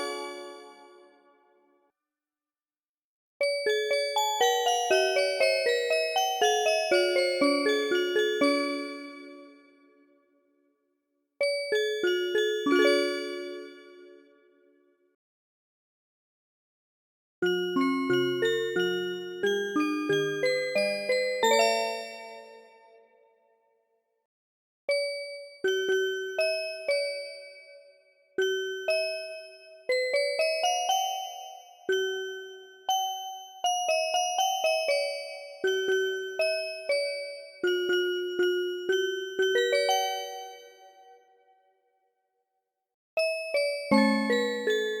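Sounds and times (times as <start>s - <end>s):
bell-like train chime melody: 3.5s - 9.3s, 11.4s - 13.8s, 17.4s - 22.6s, 28.4s - 40.9s, 43.2s - 45.0s.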